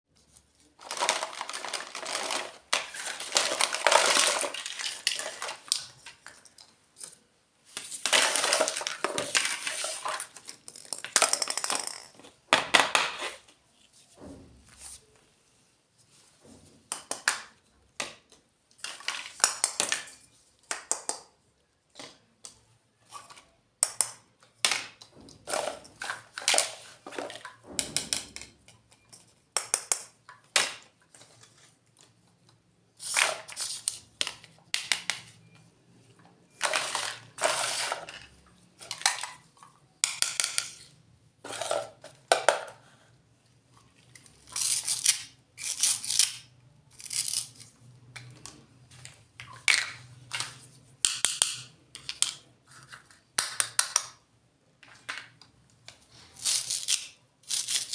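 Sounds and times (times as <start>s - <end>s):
plastic packaging crinkling: 0.7s - 6.0s.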